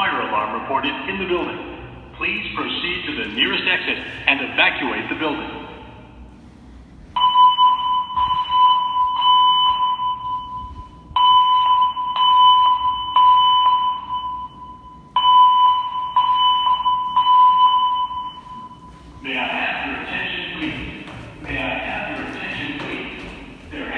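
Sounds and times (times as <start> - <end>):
spoken evacuation messages: 0.0 - 6.6, 15.2 - 23.9
fire alarm alert tone: 7.2 - 23.9.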